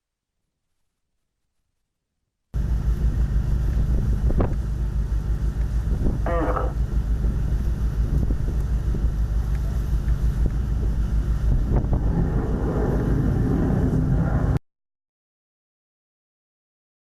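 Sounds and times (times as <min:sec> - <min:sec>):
steady low rumble: 0:02.6 - 0:14.6
wind buffeting microphone: 0:02.6 - 0:14.6.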